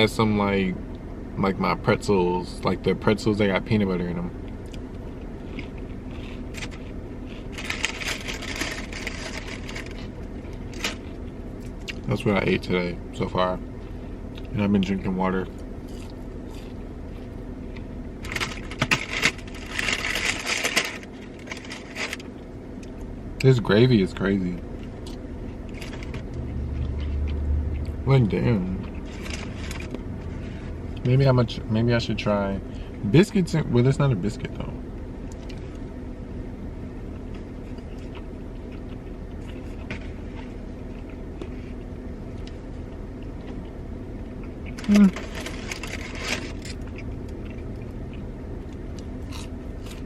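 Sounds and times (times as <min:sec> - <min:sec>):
food packaging crackling: 0:05.5 - 0:11.8, 0:18.2 - 0:22.4, 0:29.0 - 0:30.5, 0:44.7 - 0:47.9.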